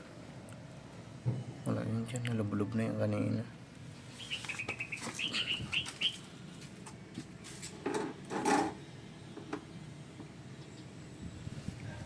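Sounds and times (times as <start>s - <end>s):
bird chirping rapidly: 4.1s - 6.3s.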